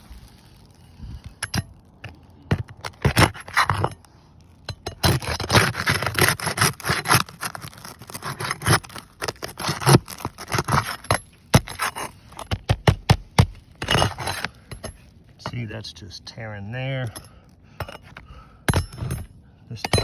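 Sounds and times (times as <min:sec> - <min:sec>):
roof shingles scraping and crackling: 0:00.0 - 0:15.7
shingle tearing: 0:00.0 - 0:15.7.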